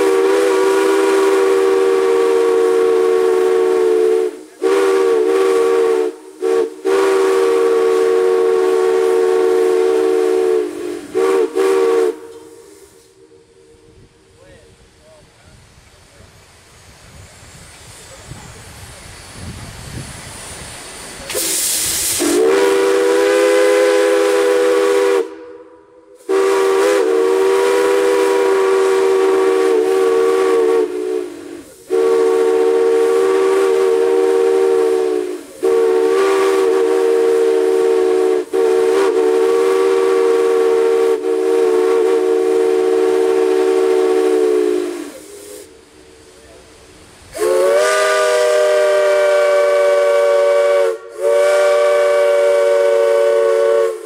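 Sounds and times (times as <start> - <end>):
steam chime whistle blasts: 0.0 - 13.6, 17.0 - 45.8, 47.3 - 54.0
steam hissing: 0.0 - 54.0.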